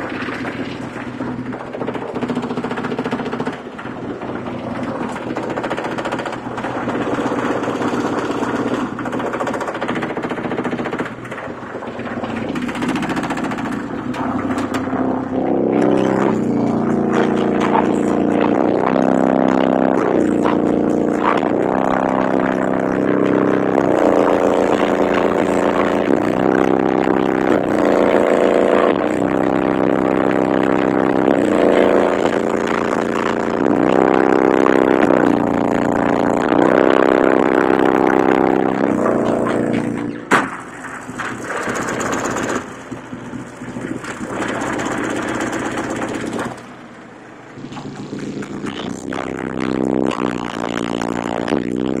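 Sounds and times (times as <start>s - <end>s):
distorted bass-heavy music: 0.0s - 52.0s
deep sustained bass note: 11.6s - 40.6s, 47.5s - 52.0s.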